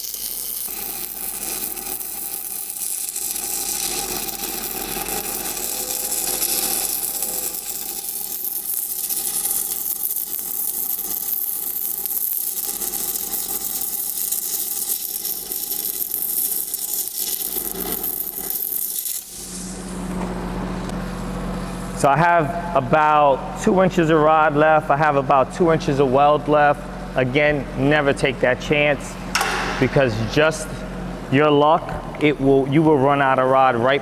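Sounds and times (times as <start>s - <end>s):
welding arc crackling: 0.0s - 20.2s.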